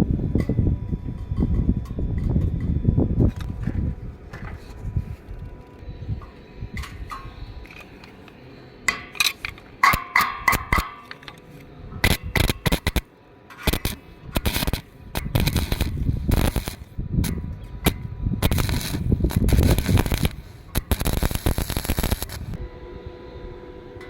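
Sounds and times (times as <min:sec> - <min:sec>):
welding arc crackling and sputtering: 0:12.0 - 0:22.6.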